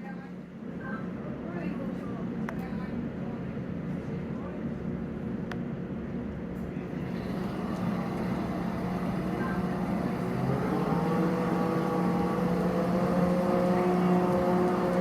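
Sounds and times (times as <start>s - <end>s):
boat engine running: 7.0s - 15.0s.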